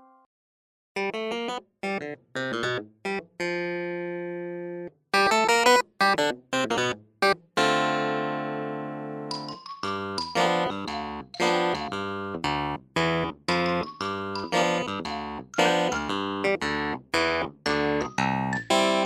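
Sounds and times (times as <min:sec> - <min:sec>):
instrumental background music: 0:07.6 - 0:19.0.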